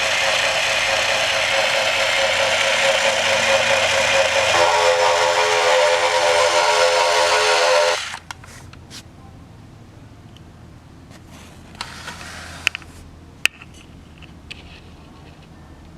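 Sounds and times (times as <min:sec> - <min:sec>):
alarm clock engine drone: 0:00.0 - 0:08.2.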